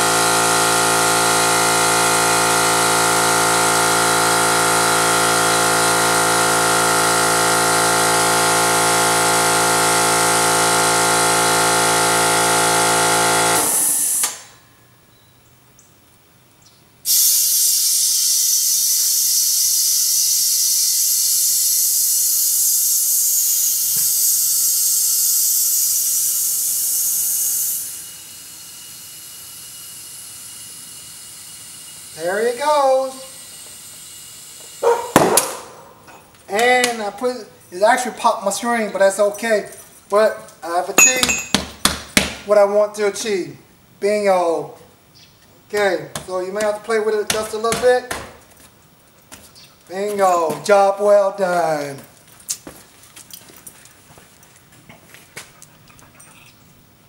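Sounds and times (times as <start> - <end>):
air compressor motor running: 0.0 - 14.5, 17.1 - 37.7
air hissing: 13.7 - 14.5, 17.1 - 32.3.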